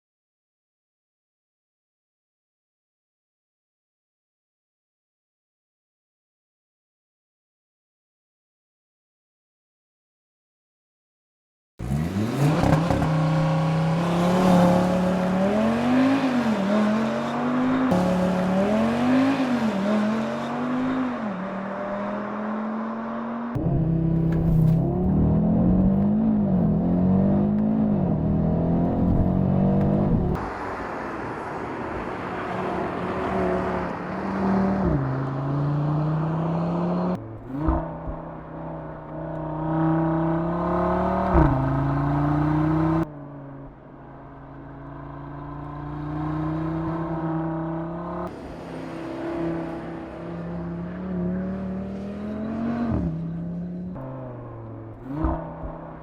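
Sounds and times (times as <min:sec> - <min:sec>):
car engine accelerating hard: 0:11.8 - 0:56.0.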